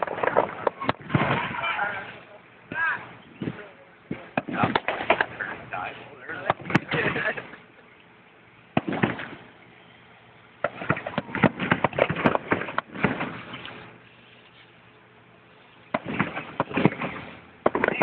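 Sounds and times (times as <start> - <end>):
fireworks bangs: 0.0 - 7.6, 8.7 - 9.6, 10.6 - 14.0, 15.9 - 18.0
rapid fireworks crackling: 0.0 - 18.0.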